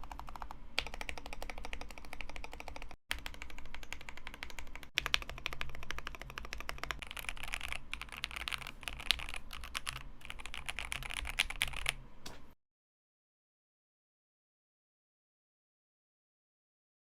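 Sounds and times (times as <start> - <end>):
fast mechanical keyboard typing: 0.0 - 12.0.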